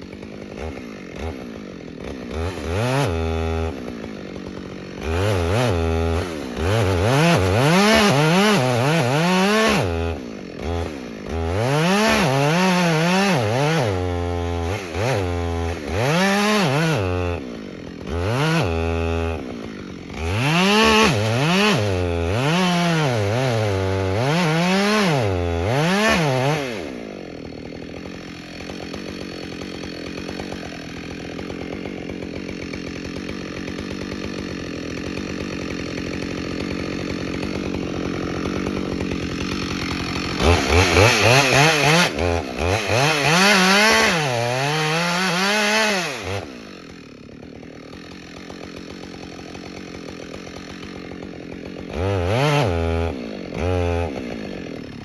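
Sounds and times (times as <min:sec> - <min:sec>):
chainsaw revving while cutting wood: 0:00.0 - 0:55.0.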